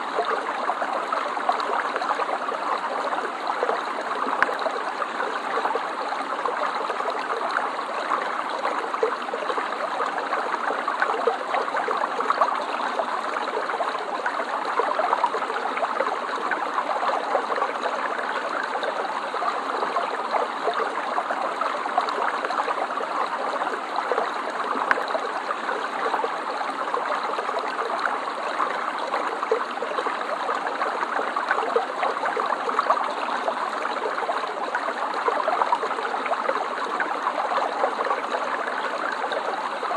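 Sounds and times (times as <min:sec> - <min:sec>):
stream water gurgling over stones: 0:00.0 - 0:39.9.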